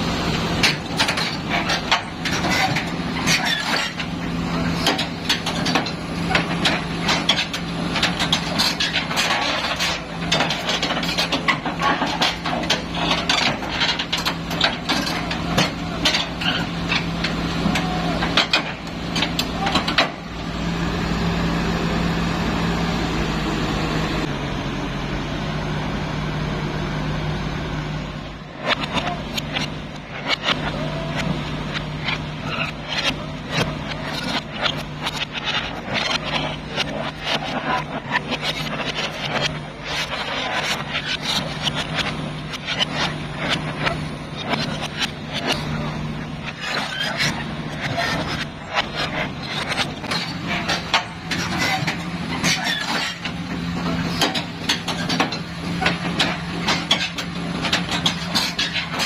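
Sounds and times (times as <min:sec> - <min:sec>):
excavator diesel engine running: 0:00.0 - 0:59.0
metallic clanks and knocks: 0:00.6 - 0:20.3, 0:46.6 - 0:59.0.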